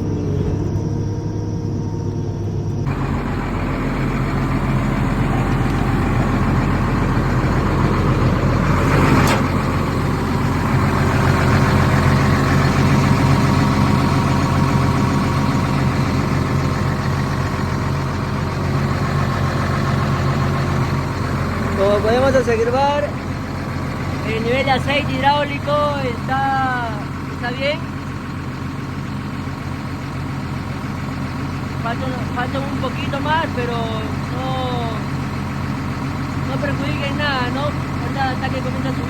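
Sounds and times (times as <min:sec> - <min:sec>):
excavator diesel engine running: 0:00.0 - 0:39.0
hydraulics working: 0:00.0 - 0:39.0.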